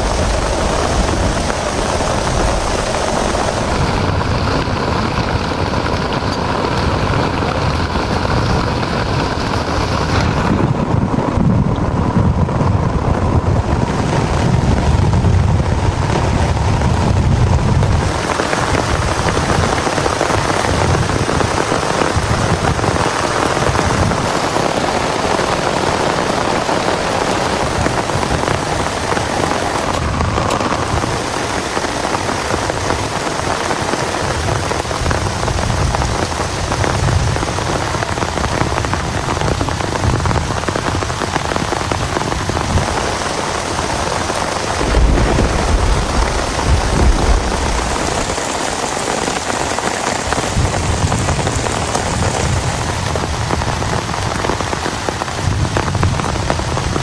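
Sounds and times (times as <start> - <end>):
heavy rain falling: 0.0 - 57.0
low rumble: 44.5 - 52.6.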